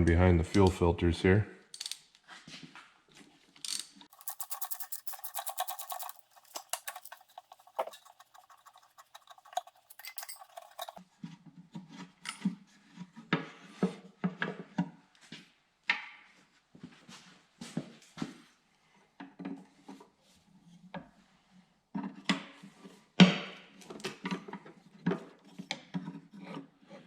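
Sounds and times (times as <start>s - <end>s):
metallic clinks and rubbing: 4.1s - 11.0s
rapid tool clicks: 4.1s - 11.0s.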